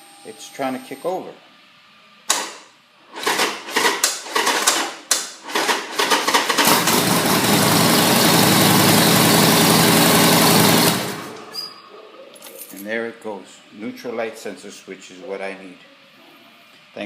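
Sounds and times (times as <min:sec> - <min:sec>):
motorcycle engine cranking and starting: 0:03.2 - 0:11.6.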